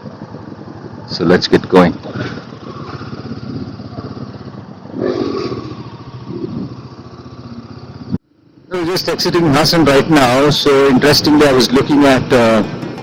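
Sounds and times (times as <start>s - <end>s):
motorcycle engine riding off: 0.0s - 8.2s, 8.9s - 13.0s.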